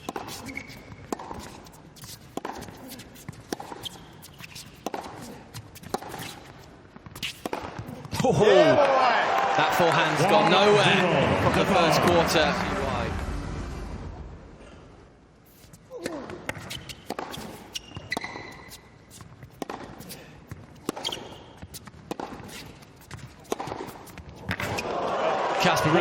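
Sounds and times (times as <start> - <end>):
shoe squeak: 0.0 - 8.1, 15.4 - 24.9
racket striking ball: 0.0 - 8.2, 16.0 - 24.9
tennis ball bouncing: 0.0 - 8.3, 15.5 - 24.9.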